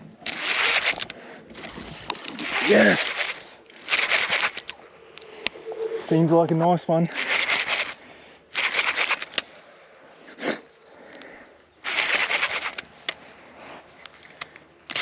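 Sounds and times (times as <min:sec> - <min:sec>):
fishing reel clicking rapidly: 0:00.3 - 0:01.1, 0:02.4 - 0:04.7, 0:07.1 - 0:08.0, 0:08.6 - 0:09.4, 0:11.8 - 0:12.8.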